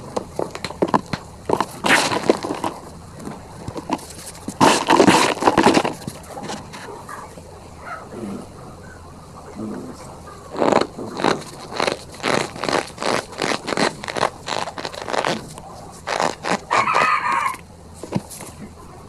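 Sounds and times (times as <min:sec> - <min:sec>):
powder squeaky crunching squeezes: 0:00.2 - 0:06.7, 0:10.4 - 0:18.7.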